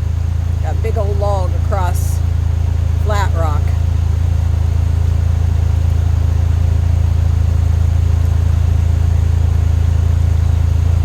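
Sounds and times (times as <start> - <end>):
vehicle engine running steadily: 0.0 - 11.0.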